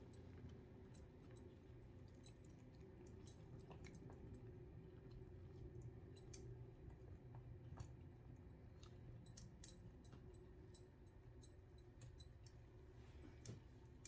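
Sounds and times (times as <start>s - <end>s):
faint small clicks: 8.8s - 10.8s, 13.4s - 13.7s.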